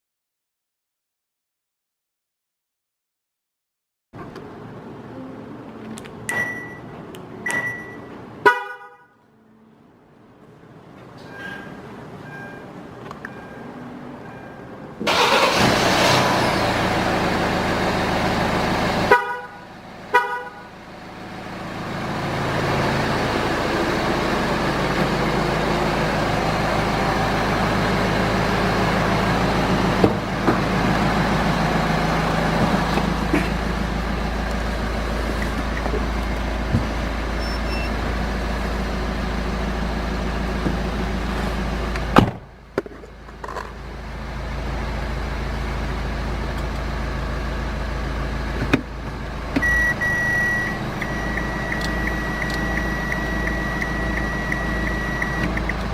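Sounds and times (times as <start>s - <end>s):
car horn chirps: 7.5s - 9.2s, 19.0s - 20.8s, 37.4s - 38.0s
car engine running: 13.4s - 55.9s.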